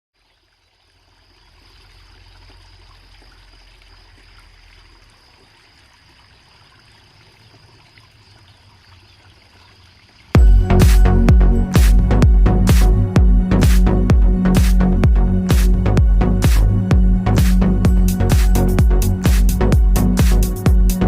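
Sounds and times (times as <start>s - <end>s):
trickling water: 0.1s - 21.0s
thin high tone: 10.4s - 14.0s
electronic dance music: 10.4s - 21.0s.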